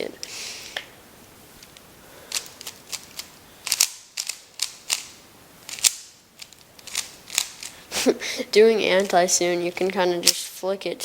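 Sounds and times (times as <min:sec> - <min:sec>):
speed cube clacking: 0:02.3 - 0:07.8.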